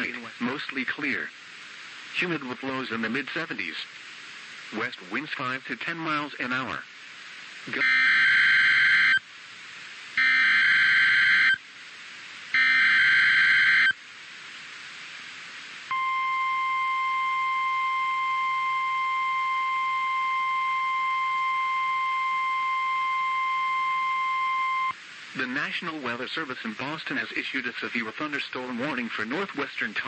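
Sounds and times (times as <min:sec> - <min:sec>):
steady warning alarm tone: 0:07.8 - 0:09.2, 0:10.2 - 0:11.6, 0:12.6 - 0:14.0, 0:15.9 - 0:24.9
warbling digital data screech: 0:10.2 - 0:11.6, 0:12.6 - 0:14.0.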